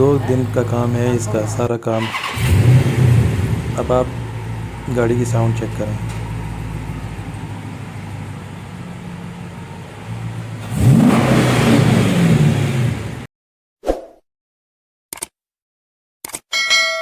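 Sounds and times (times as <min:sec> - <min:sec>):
car engine idling and revving: 0:00.0 - 0:13.3.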